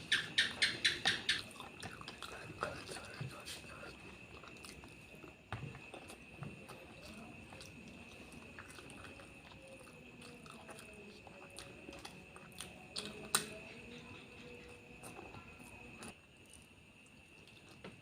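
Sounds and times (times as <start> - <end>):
person chewing with mouth sounds: 0.4 - 13.9.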